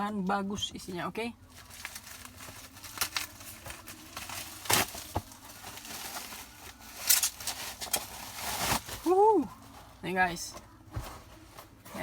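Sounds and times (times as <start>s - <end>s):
packaging crinkling and rustling: 1.4s - 10.0s
packaging ripping: 1.5s - 9.2s.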